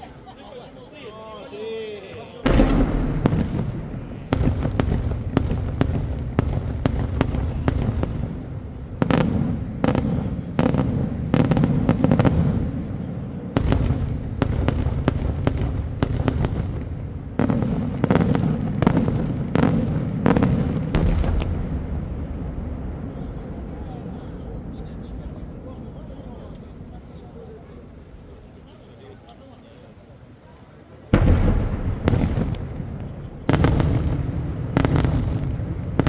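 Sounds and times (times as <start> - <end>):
low rumbling echo: 2.4 - 14.9, 21.0 - 28.4, 31.2 - 36.0
fireworks bangs: 2.4 - 28.5, 31.1 - 36.0.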